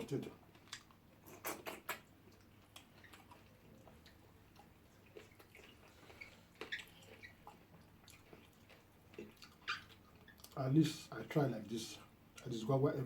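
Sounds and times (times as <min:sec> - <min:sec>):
wet chewing clicks and smacks: 0:00.3 - 0:10.6.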